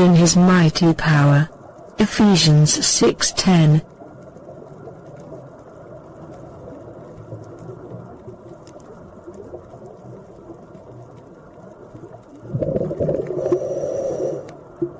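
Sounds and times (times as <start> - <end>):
faint clicks: 3.8 - 12.5, 14.3 - 14.9.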